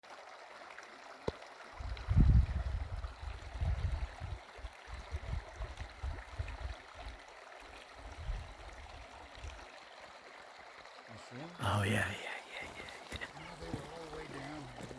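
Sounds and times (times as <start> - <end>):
river rushing: 11.6 - 14.9.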